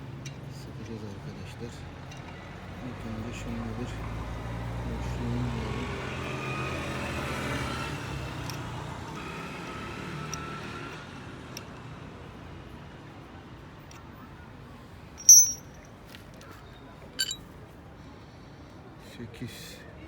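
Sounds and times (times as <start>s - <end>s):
passing vehicle engine: 3.6s - 10.0s
metal hand tools clicking: 15.2s - 15.7s
sharp metallic clink: 15.2s - 15.8s, 17.2s - 17.4s.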